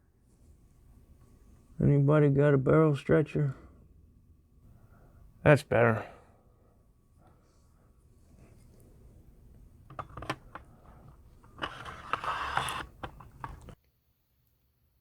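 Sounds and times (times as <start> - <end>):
scraping rattle: 9.9 - 13.8.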